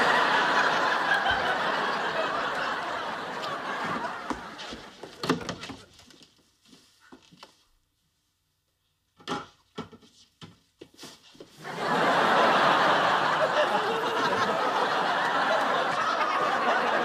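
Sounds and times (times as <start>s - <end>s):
studio audience laughing: 0.0s - 4.9s, 11.6s - 17.0s.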